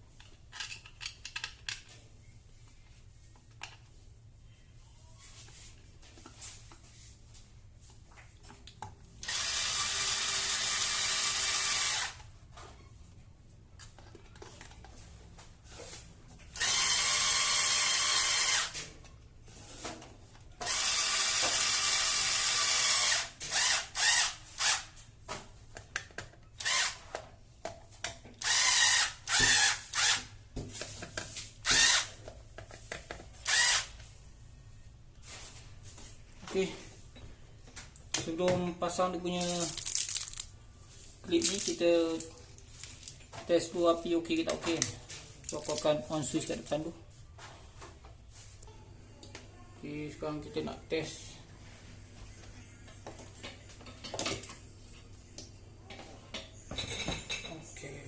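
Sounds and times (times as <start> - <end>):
power drill driving a screw: 9.2 - 12.2, 16.6 - 18.8, 20.6 - 24.9, 26.6 - 27.0, 28.4 - 30.3, 31.7 - 32.1, 33.4 - 33.9.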